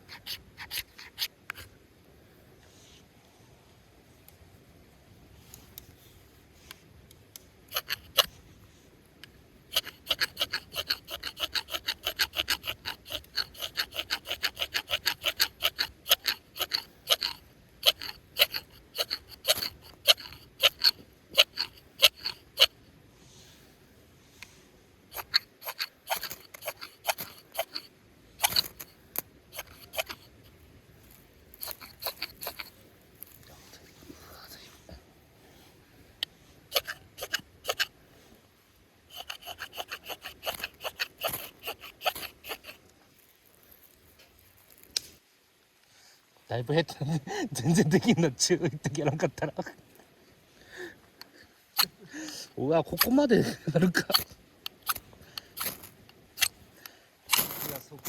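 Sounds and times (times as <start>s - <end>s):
quick scraping strokes: 0.0s - 1.7s, 7.7s - 8.4s, 9.7s - 22.8s, 24.4s - 30.4s, 31.0s - 34.8s, 36.7s - 37.9s, 39.1s - 42.9s, 54.0s - 56.6s.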